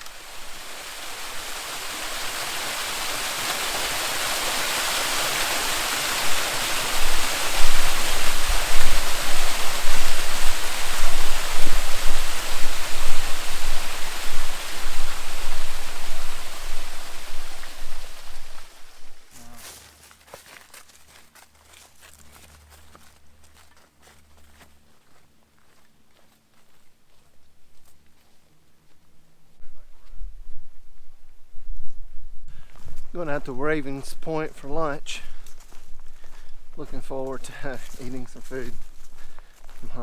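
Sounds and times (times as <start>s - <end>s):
rushing waterfall: 0.0s - 19.3s.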